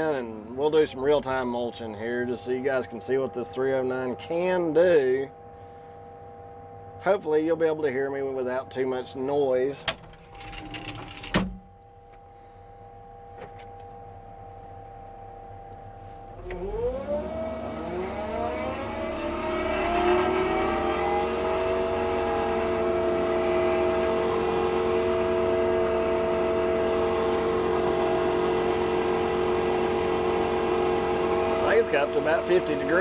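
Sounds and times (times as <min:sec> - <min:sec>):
forestry mulcher whining: 0:15.9 - 0:33.0.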